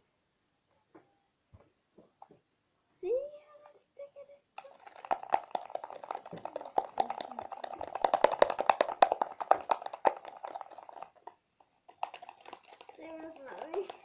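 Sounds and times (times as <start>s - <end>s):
spoon stirring and knocking in cup: 4.6s - 14.0s.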